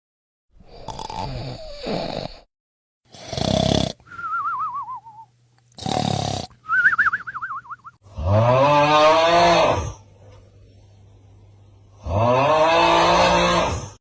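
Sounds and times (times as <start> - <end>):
comic snoring snorts: 0.6 - 2.5, 3.1 - 4.0, 5.7 - 6.5, 8.1 - 10.0, 12.0 - 14.0.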